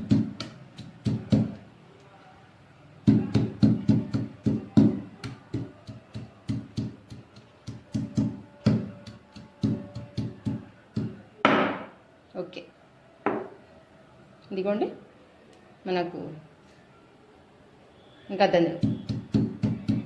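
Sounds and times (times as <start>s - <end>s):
garlic being pounded: 0.0s - 1.6s, 3.0s - 11.9s, 18.8s - 20.0s.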